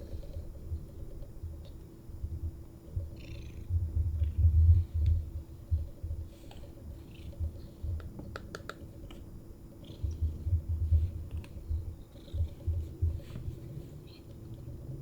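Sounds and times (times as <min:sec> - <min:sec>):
kitten purring: 0:00.0 - 0:01.6, 0:02.8 - 0:15.0
sharp clicks: 0:08.0 - 0:08.8.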